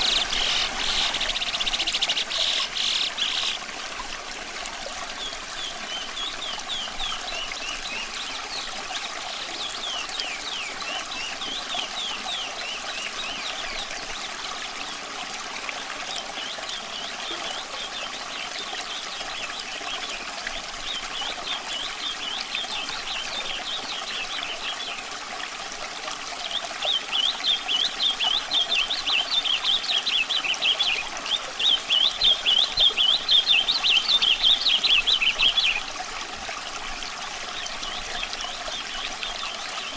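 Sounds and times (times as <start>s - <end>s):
water trickling: 0.0s - 39.9s
nightingale singing: 27.1s - 35.8s.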